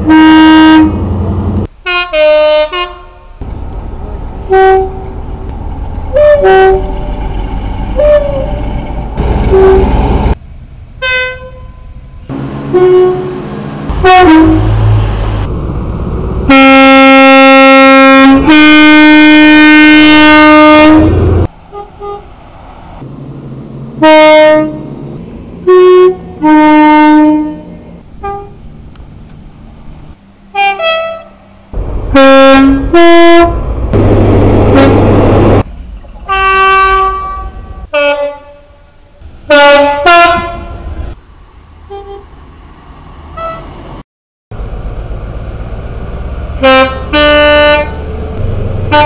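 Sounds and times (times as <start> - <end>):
train horn toots: 0.0 - 1.1, 1.8 - 3.3, 4.5 - 5.1, 6.1 - 6.9, 8.0 - 8.6, 9.4 - 10.0, 11.0 - 12.0, 12.7 - 15.0, 16.5 - 22.3, 24.0 - 24.9, 25.6 - 28.6, 30.5 - 31.4, 32.1 - 33.6, 34.7 - 35.6, 36.3 - 38.9, 39.5 - 41.0, 41.9 - 42.3, 43.4 - 43.7, 46.6 - 48.0
long loud train horn blasts: 0.0 - 1.2, 1.8 - 3.3, 4.4 - 5.2, 6.1 - 6.9, 8.0 - 8.6, 9.4 - 10.0, 11.0 - 15.0, 16.5 - 22.3, 24.0 - 24.9, 25.6 - 28.6, 30.5 - 31.5, 32.1 - 33.6, 34.5 - 35.6, 36.3 - 41.0, 41.9 - 42.3, 43.4 - 43.7, 46.6 - 48.0
diesel engine rumble: 0.7 - 1.9, 3.1 - 38.0, 38.7 - 49.0.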